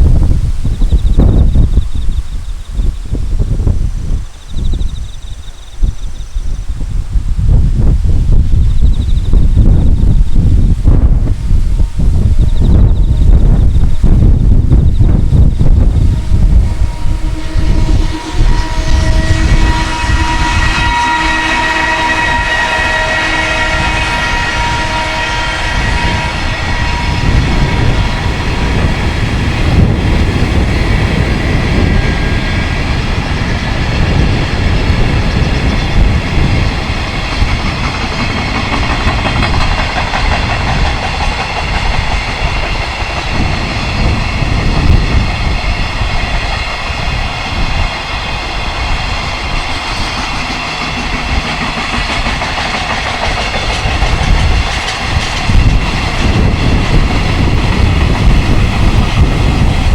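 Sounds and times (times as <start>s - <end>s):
freight train wheels clattering: 12.5s - 59.9s.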